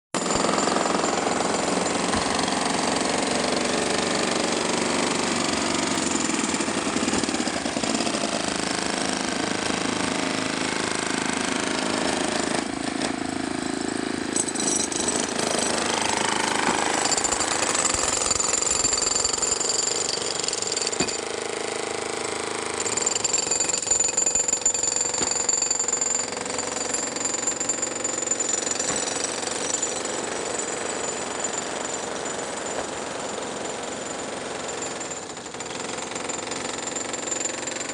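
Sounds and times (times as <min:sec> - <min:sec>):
jackhammer breaking concrete: 0:00.2 - 0:37.9.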